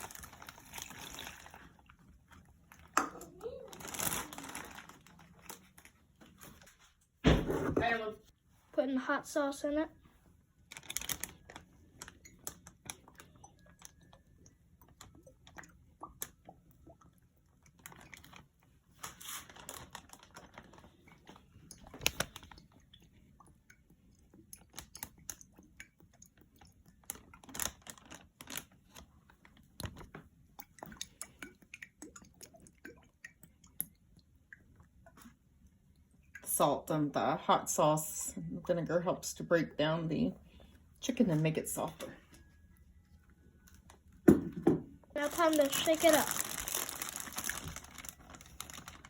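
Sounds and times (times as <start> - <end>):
plastic bag rustles: 0.0 - 1.9, 3.4 - 7.0, 10.7 - 12.6, 17.9 - 22.5, 27.4 - 30.1, 45.1 - 49.0
plastic bags crinkling: 0.0 - 2.0, 2.6 - 6.7, 10.7 - 14.1, 17.8 - 22.6, 27.0 - 30.1, 45.1 - 49.0.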